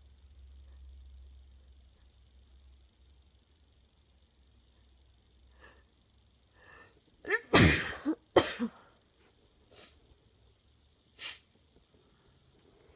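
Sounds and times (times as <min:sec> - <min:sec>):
woman breathing: 0:05.4 - 0:07.2
woman sneezing: 0:07.3 - 0:08.8.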